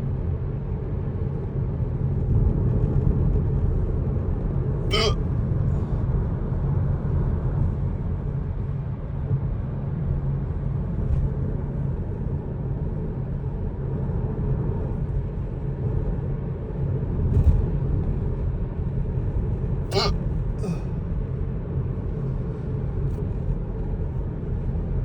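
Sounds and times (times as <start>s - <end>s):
faint short sounds: 4.9s - 5.2s, 19.9s - 20.8s.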